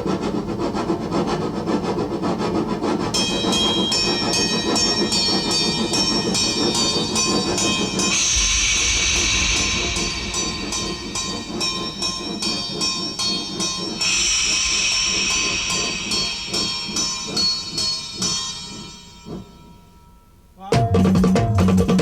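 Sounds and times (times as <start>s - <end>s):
train chugging: 0.0s - 22.0s
bell-like ringing tones: 3.2s - 20.9s.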